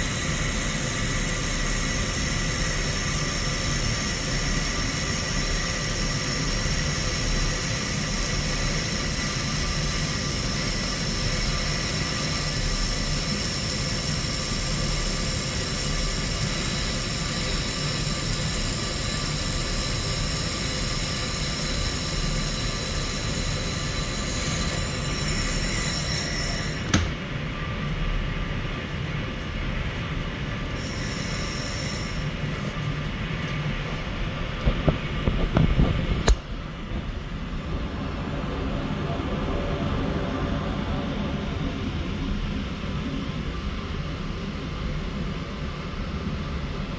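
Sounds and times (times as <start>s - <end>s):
laser welder high-pitched whine: 0.0s - 36.6s
welder switch click: 36.2s - 36.5s.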